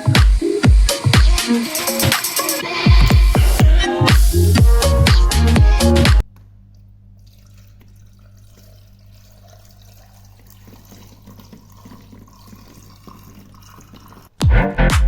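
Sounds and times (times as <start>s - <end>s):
electronic music with strong beat: 0.0s - 6.2s, 14.4s - 15.0s
faint trickling water: 6.7s - 14.4s.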